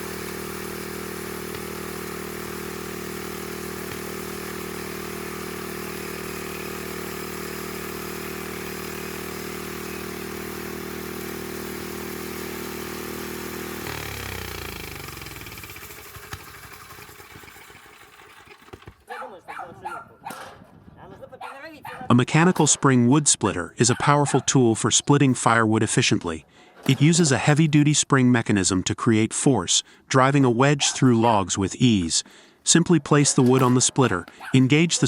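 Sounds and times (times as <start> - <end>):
engine running and winding down: 0.0 - 19.0.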